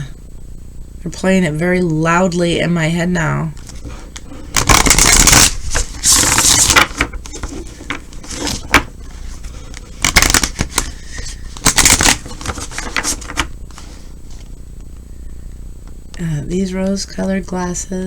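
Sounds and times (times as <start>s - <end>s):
cards being shuffled: 3.6s - 14.5s.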